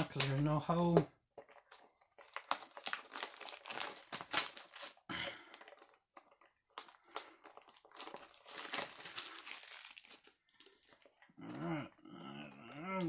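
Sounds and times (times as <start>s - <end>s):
packaging crinkling: 1.2s - 11.4s.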